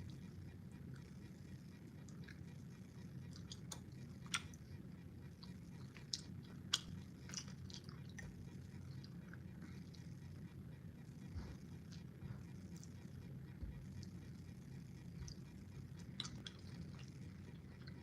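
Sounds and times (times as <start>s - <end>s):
low steady hum: 0.0s - 18.0s
person chewing: 3.3s - 4.6s, 5.8s - 8.4s, 16.0s - 18.0s
wet mouth clicks and smacks: 6.1s - 7.9s.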